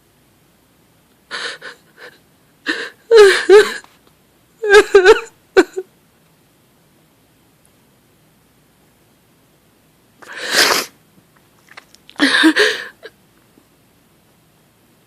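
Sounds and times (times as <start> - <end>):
woman sobbing: 1.3 - 3.9, 4.6 - 5.9, 12.2 - 13.2.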